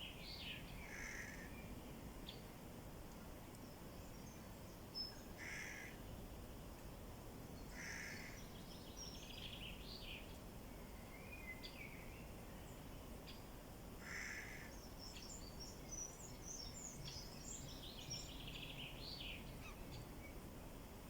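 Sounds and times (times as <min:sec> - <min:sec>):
wild birds calling and singing: 0:07.6 - 0:10.3.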